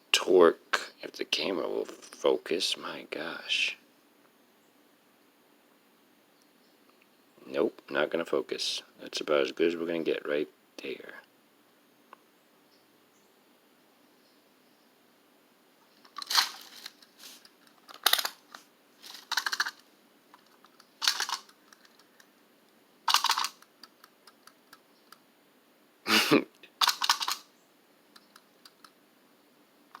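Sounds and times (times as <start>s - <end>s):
rustling scraping handling noises: 16.0s - 22.3s.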